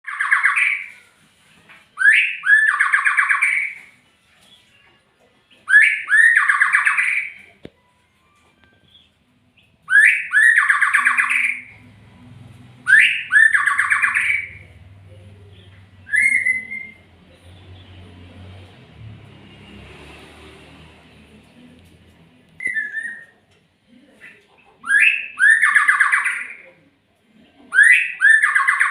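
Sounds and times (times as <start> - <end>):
songbird singing trills: 8.9 - 11.8, 15.5 - 17.1, 22.6 - 23.4, 24.8 - 26.7.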